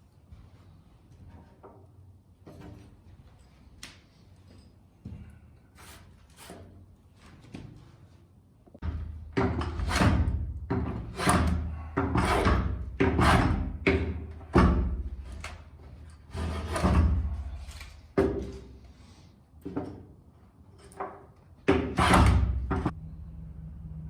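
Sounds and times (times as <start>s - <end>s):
hand tool working wood: 9.4s - 15.5s, 16.2s - 18.6s, 21.7s - 22.9s.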